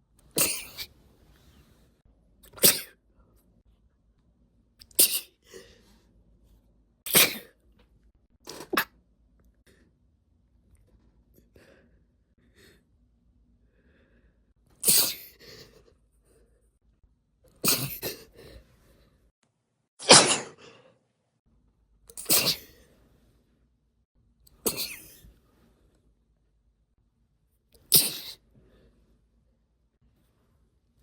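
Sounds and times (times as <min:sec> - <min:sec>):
woman sneezing: 0:00.4 - 0:00.9, 0:05.0 - 0:05.4, 0:07.1 - 0:07.5, 0:14.8 - 0:15.4, 0:17.6 - 0:18.2, 0:22.2 - 0:22.7, 0:24.6 - 0:25.3, 0:27.9 - 0:28.4.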